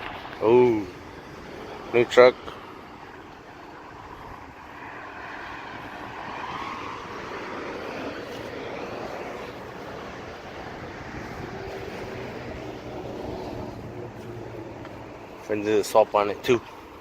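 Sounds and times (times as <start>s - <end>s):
vehicle engine and road noise: 0.0s - 17.0s.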